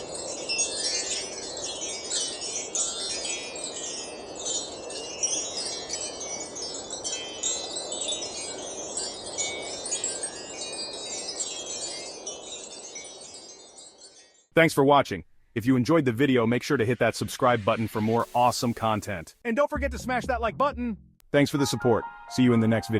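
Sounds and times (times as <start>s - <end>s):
wind chimes tinkling: 0.0s - 14.5s.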